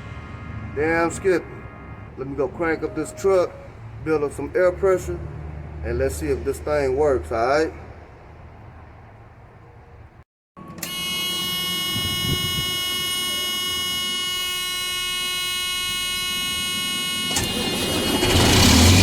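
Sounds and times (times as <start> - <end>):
dashboard warning buzzer: 10.6 - 18.8
diesel engine cranking and starting: 15.0 - 19.0.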